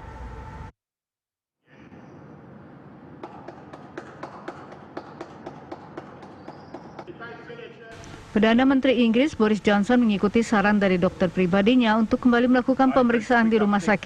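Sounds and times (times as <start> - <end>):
low steady background noise: 1.7 - 14.0
irregular sharp clicks and taps: 3.2 - 7.1.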